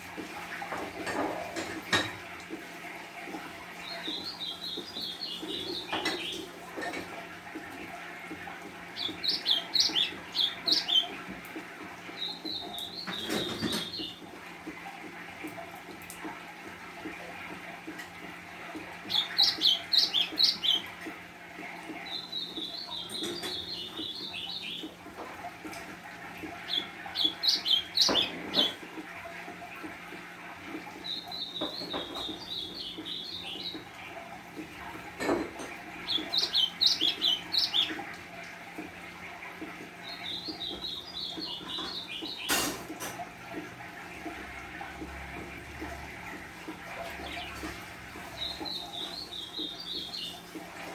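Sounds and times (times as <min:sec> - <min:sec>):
bird song with warbled twitter: 0:03.8 - 0:06.5, 0:08.9 - 0:11.2, 0:12.1 - 0:14.2, 0:19.1 - 0:20.9, 0:22.0 - 0:24.9, 0:26.5 - 0:28.8, 0:31.0 - 0:33.9, 0:36.0 - 0:38.1, 0:40.0 - 0:42.5, 0:48.3 - 0:50.4.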